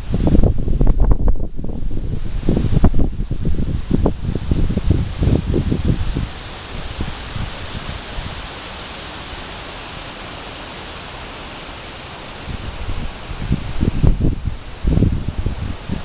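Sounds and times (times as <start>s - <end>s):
wind buffeting microphone: 0.0s - 8.6s, 12.2s - 16.0s
wind rushing through leaves: 0.0s - 16.0s.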